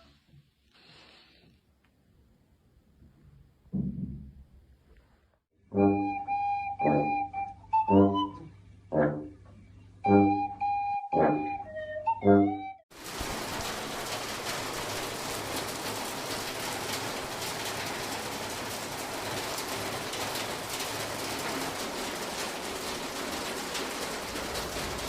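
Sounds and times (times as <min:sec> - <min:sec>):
steady hiss with fine ticking: 0:13.0 - 0:25.0.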